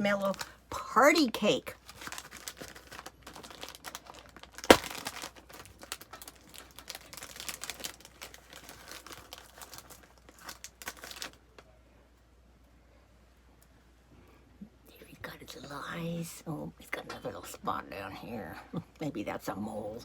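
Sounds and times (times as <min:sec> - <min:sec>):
plastic packaging crinkling: 0:00.0 - 0:11.7.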